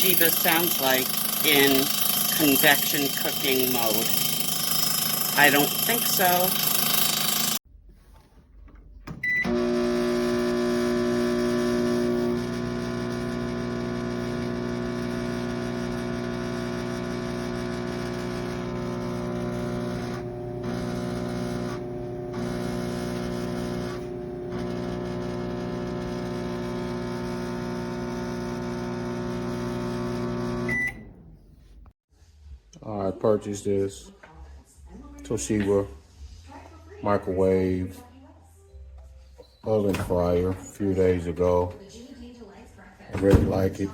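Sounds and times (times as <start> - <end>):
combo oven humming: 0.0 - 7.6, 9.2 - 31.2.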